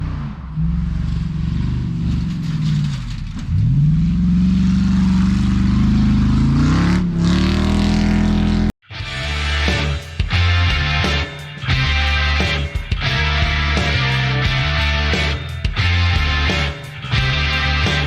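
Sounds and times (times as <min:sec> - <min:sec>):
vehicle engine revving: 0:00.0 - 0:08.8.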